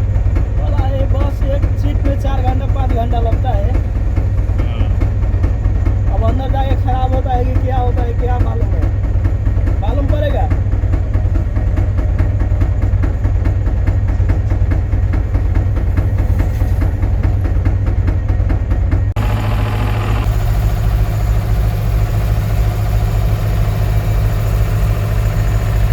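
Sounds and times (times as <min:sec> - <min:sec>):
heavy engine drone: 0:00.0 - 0:25.9
pile driver rapid knocking: 0:00.0 - 0:25.9.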